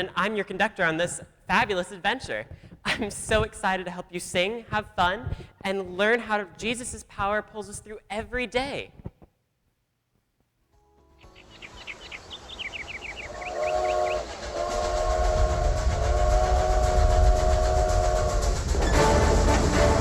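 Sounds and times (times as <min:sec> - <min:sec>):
train rumbling: 0:11.6 - 0:20.0
train chord whistle: 0:12.9 - 0:20.0.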